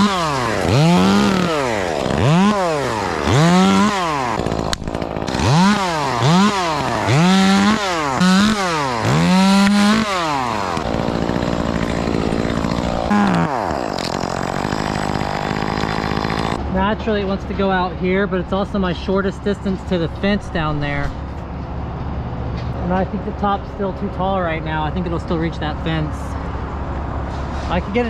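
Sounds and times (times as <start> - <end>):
chainsaw revving: 0.0 - 16.7.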